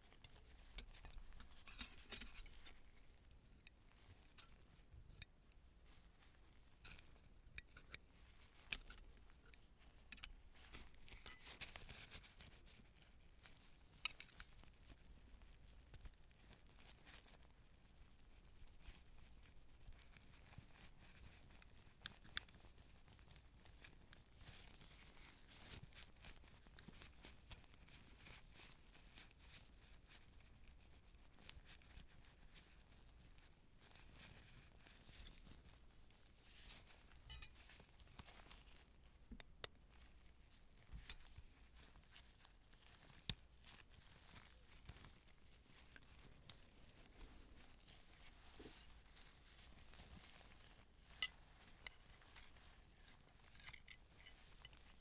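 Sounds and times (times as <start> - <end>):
light metallic clinks: 0.2 - 3.0, 6.9 - 11.8, 37.2 - 38.5.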